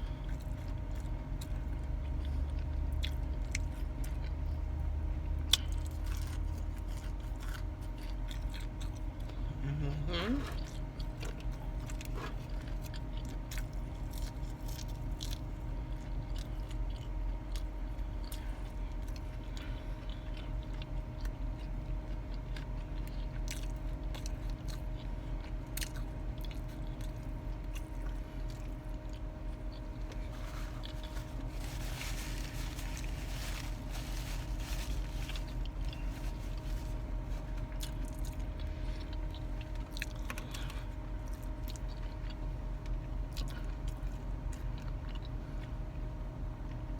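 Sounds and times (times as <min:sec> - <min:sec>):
person chewing crunchy food: 0:00.0 - 0:09.6, 0:10.4 - 0:45.8
steady low hum: 0:00.0 - 0:46.9
rustling: 0:30.2 - 0:37.5.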